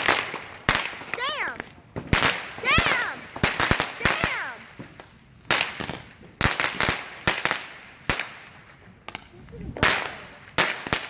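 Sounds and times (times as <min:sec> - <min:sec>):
fireworks bangs: 0:00.0 - 0:11.0.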